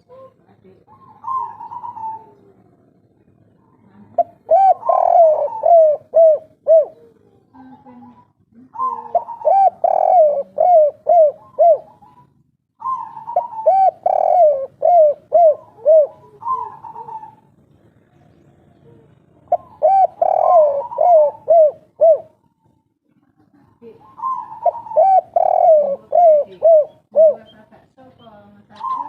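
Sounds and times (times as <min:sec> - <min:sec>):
dove cooing: 0:00.0 - 0:02.9, 0:03.6 - 0:22.8, 0:23.6 - 0:29.0.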